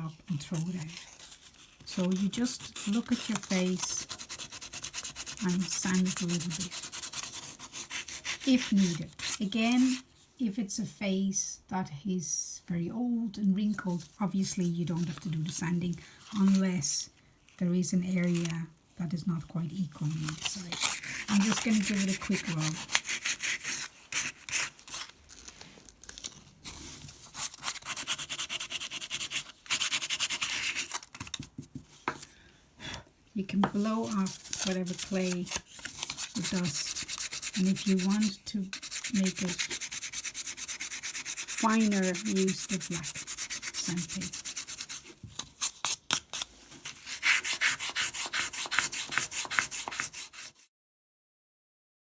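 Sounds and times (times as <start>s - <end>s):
sandpaper rubbing on clay: 0.5s - 10.0s, 20.1s - 25.1s, 27.2s - 31.0s, 33.7s - 50.7s.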